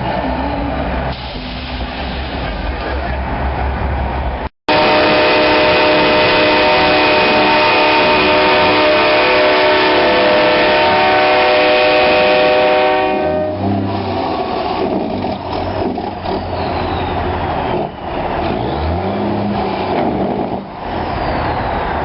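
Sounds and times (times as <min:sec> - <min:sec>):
train horn blast: 0:04.7 - 0:14.0.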